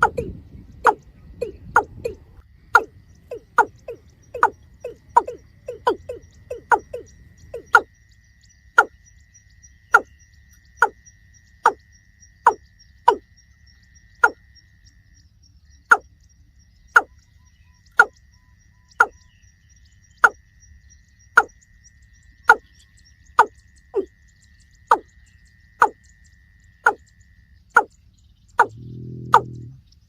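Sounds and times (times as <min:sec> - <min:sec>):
bird calling hollow notes: 0:00.0 - 0:07.9, 0:08.8 - 0:09.0, 0:12.5 - 0:13.2, 0:17.8 - 0:18.2, 0:18.9 - 0:19.4, 0:23.4 - 0:24.1, 0:24.9 - 0:25.2, 0:26.8 - 0:27.1, 0:27.7 - 0:29.9.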